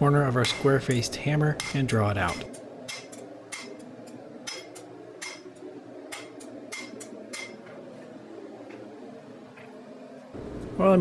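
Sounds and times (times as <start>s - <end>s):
hammer striking steel on anvil: 0.3s - 7.8s.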